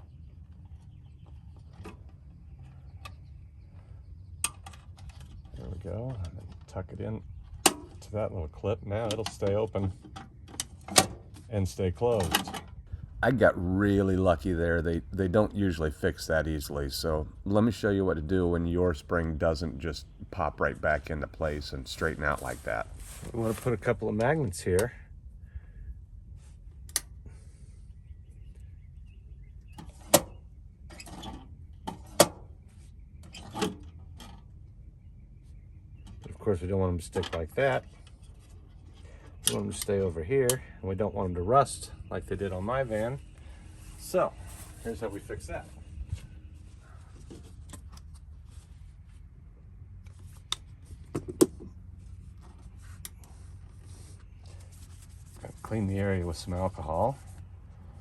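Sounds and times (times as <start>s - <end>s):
faint rustling: 20.8s - 24.1s, 42.6s - 49.4s, 51.8s - 58.0s.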